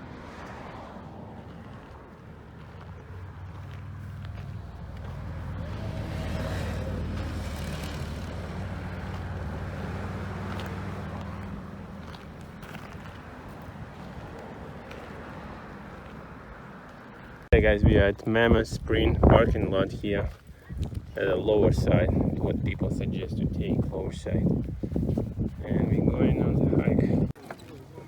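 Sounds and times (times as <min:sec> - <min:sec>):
vehicle engine and road noise: 0:00.0 - 0:28.0.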